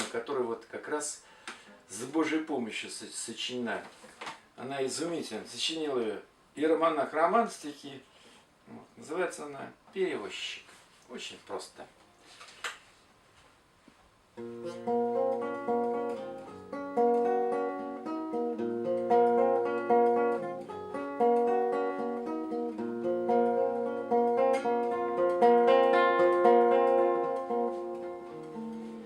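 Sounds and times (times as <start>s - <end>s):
acoustic guitar picking: 14.4s - 29.0s.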